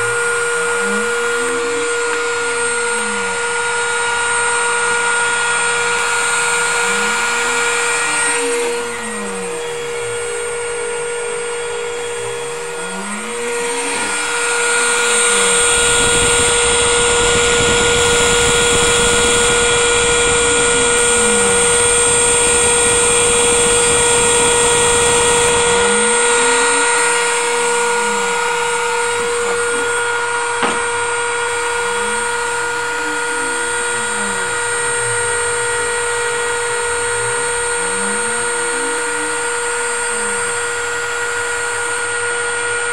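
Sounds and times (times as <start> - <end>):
spindle motor whine: 0.0 - 42.9
stepper motors whining: 0.0 - 42.9.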